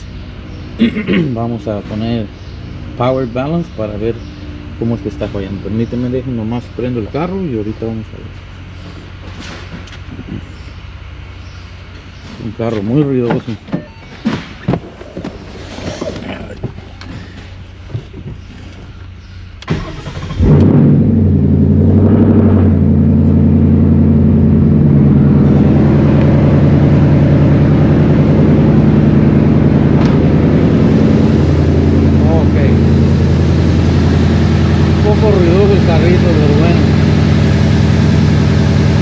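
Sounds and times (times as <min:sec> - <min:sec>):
car engine starting and idling: 0:13.0 - 0:39.0.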